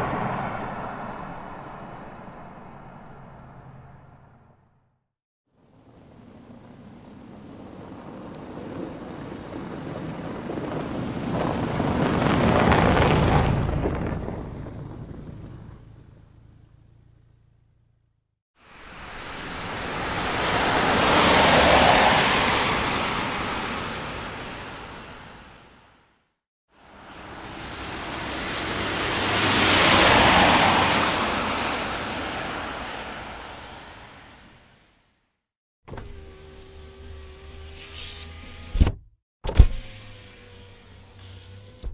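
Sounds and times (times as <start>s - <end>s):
car passing by: 0.0s - 4.6s, 18.7s - 25.7s, 26.8s - 34.8s.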